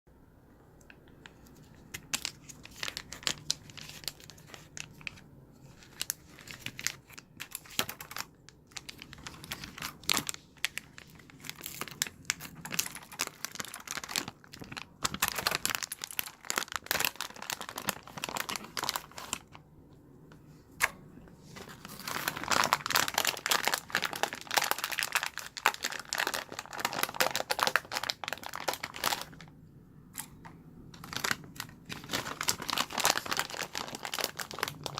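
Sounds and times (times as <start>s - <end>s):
cleaning gel crinkling on keyboard: 1.2s - 19.5s, 31.0s - 34.9s.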